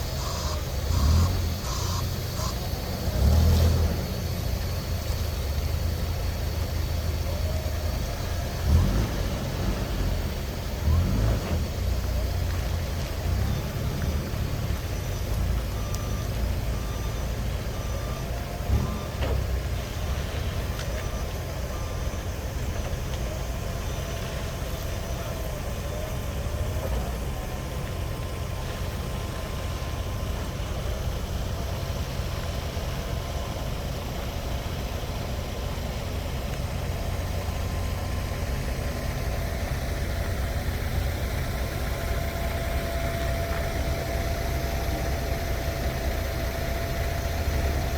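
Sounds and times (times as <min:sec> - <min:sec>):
heavy vehicle engine running: 0:00.0 - 0:47.9
reverse alarm beeping: 0:00.0 - 0:47.9.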